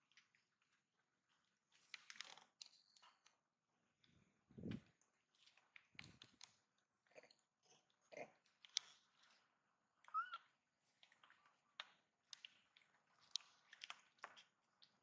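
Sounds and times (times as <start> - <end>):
clicks and rustles: 0.0 - 7.4, 10.4 - 15.0
monkey squeak: 10.1 - 10.4.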